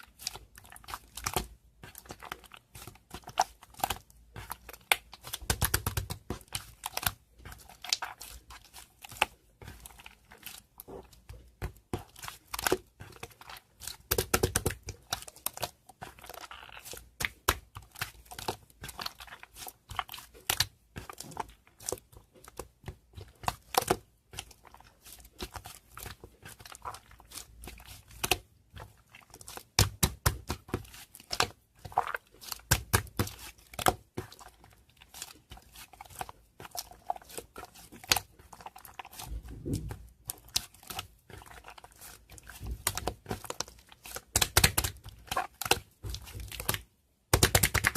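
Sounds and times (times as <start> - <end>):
crinkling and sharp clicks: 27.2 - 47.9.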